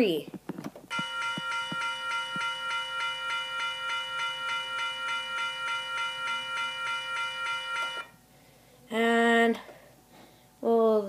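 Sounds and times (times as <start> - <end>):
railroad crossing bell dinging: 0.9 - 8.1.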